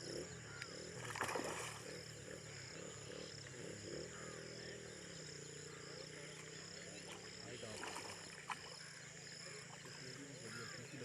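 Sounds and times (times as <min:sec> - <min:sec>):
frogs croaking: 0:00.0 - 0:11.0
insects chirring: 0:00.0 - 0:11.0.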